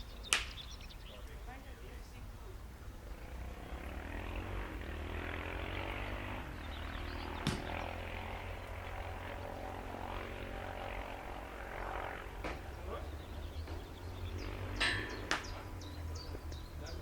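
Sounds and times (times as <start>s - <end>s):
faint engine drone: 0.0s - 17.0s
sharp crack: 0.3s - 0.6s, 7.4s - 8.0s, 14.8s - 15.6s.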